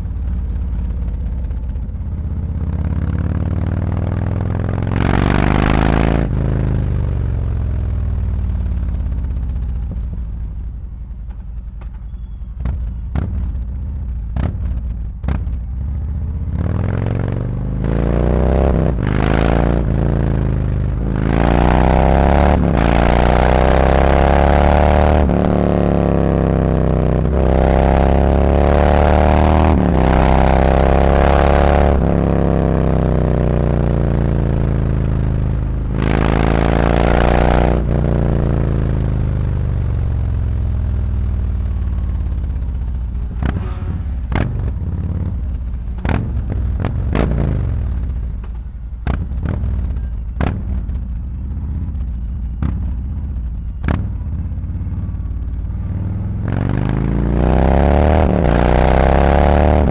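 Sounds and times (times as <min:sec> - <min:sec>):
motorcycle engine revving: 0:02.5 - 0:07.6, 0:16.4 - 0:48.4, 0:52.6 - 0:59.9.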